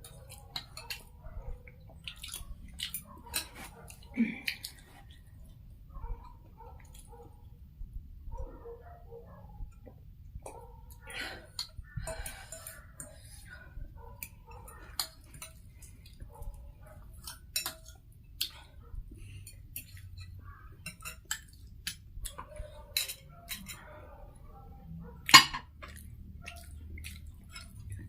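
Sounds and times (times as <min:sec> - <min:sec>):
utensils clinking on plates: 0:12.0 - 0:13.2, 0:19.5 - 0:21.6, 0:22.9 - 0:23.8, 0:25.3 - 0:26.0.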